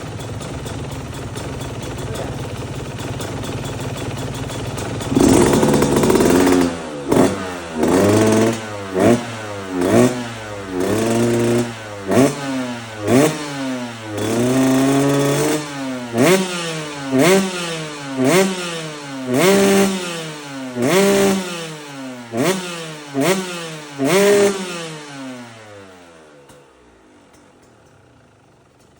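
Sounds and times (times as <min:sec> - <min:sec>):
dirt bike engine revving: 0:04.8 - 0:26.6.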